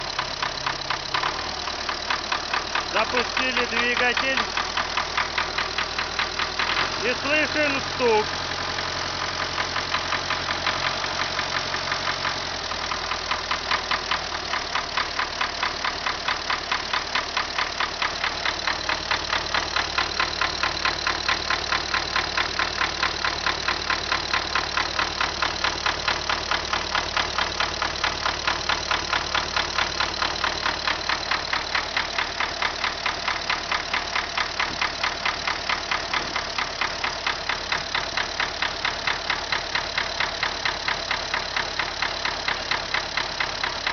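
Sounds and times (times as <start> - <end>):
tractor diesel engine running: 0.0 - 43.9.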